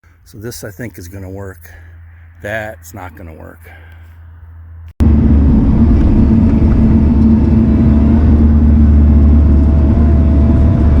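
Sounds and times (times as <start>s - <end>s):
heavy diesel engine running: 5.0s - 11.0s.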